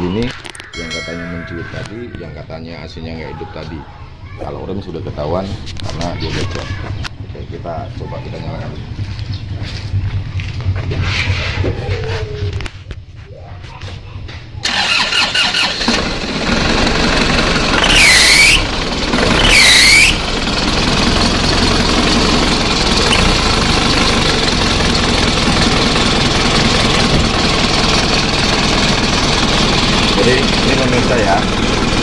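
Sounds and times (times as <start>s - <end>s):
diesel engine starting and idling: 14.6s - 32.0s
belt squealing: 17.7s - 20.3s, 23.0s - 24.2s.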